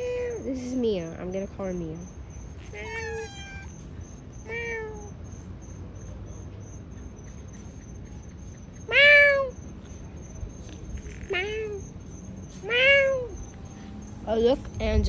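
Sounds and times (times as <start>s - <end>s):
cat meowing: 0.0s - 0.8s, 2.4s - 5.5s, 8.8s - 10.0s, 10.7s - 14.1s.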